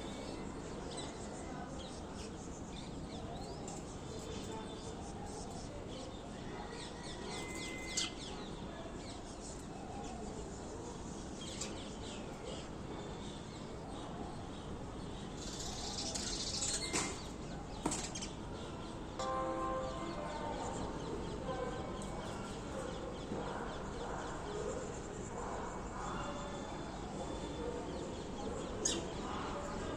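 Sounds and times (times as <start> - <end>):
sparrows chirping: 0.0 - 19.2.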